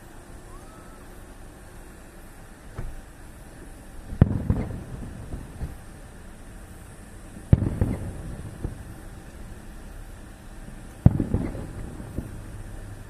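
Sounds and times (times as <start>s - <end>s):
rolling rumble: 0.0s - 13.0s
faint firework thump: 2.7s - 3.0s, 4.1s - 5.8s
small firework pops: 3.6s - 6.0s, 7.4s - 9.4s, 10.7s - 12.6s
fireworks bangs: 3.6s - 13.0s.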